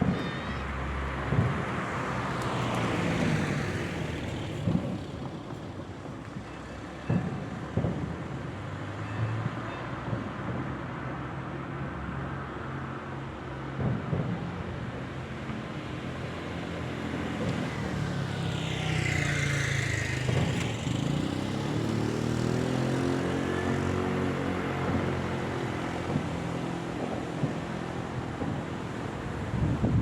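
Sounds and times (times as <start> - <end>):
vehicle engine passing by: 16.9 - 27.6.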